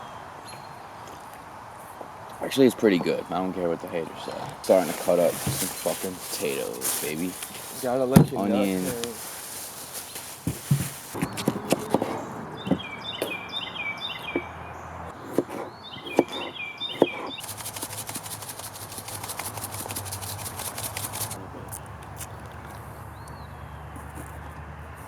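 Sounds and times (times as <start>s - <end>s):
bird chirping: 12.5s - 14.5s, 15.7s - 17.9s.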